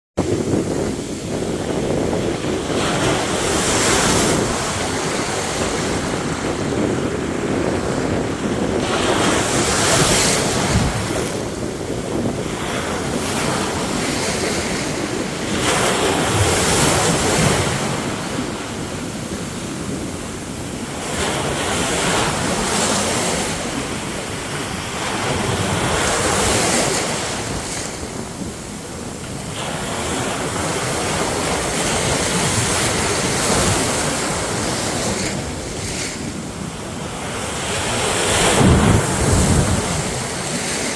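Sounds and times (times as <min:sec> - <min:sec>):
sea waves breaking on beach: 0:00.2 - 0:40.9
wind buffeting microphone: 0:00.2 - 0:40.9.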